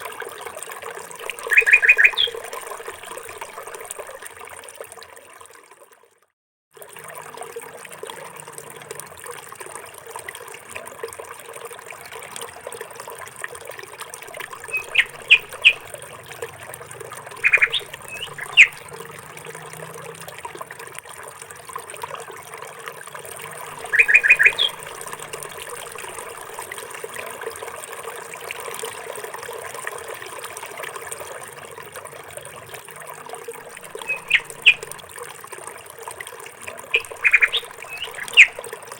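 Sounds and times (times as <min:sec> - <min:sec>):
trickling water hiss: 0:00.0 - 0:05.6, 0:06.8 - 0:38.9
birds chirping: 0:01.4 - 0:02.4, 0:14.6 - 0:16.1, 0:17.2 - 0:19.0, 0:23.7 - 0:26.2, 0:33.8 - 0:35.0, 0:36.9 - 0:38.6.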